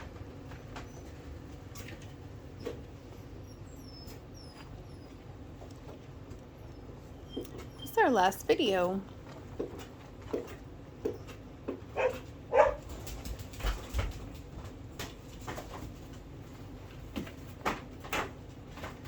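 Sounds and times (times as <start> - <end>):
puppies whimpering: 2.5 - 5.6, 6.6 - 8.0.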